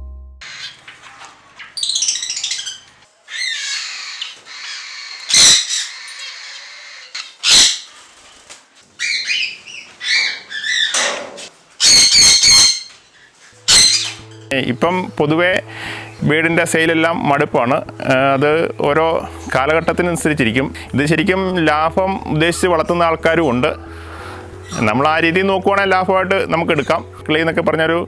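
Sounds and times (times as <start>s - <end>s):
loud harsh bird screeches: 0.4s - 8.0s, 9.0s - 11.1s, 11.8s - 14.4s
parrots and small birds chattering: 0.4s - 8.0s, 9.0s - 11.1s, 11.8s - 14.5s.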